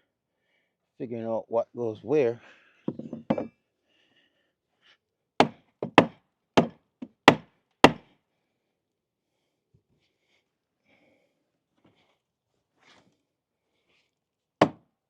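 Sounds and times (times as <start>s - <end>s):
hammer striking wooden boards: 5.4s - 8.0s.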